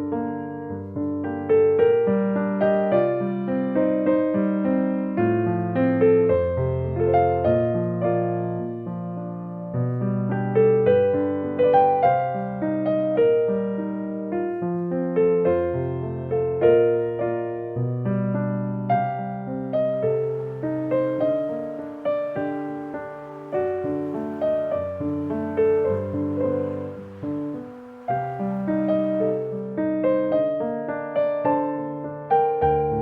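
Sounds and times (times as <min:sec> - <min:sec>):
gentle piano music: 0:00.0 - 0:33.0.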